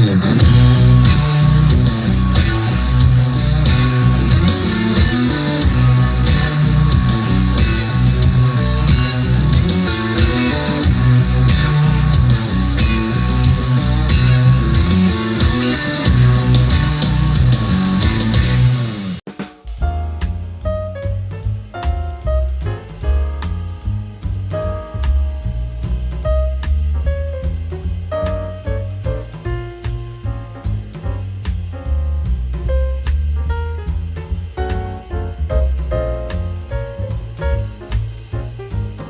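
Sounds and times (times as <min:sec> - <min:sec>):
rock music through speakers: 0:00.0 - 0:26.8.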